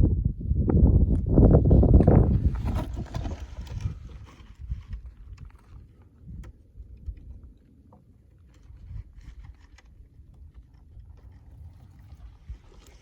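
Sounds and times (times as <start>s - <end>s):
wind buffeting microphone: 0.0s - 7.6s.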